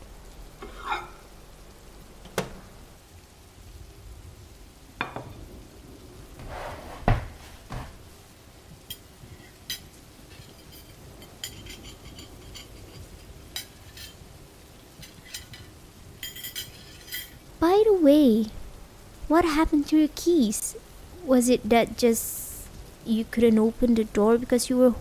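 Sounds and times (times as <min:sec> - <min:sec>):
dishes knocking: 0:06.4 - 0:08.0
cutlery clinking on plates: 0:09.7 - 0:14.2, 0:15.0 - 0:17.4.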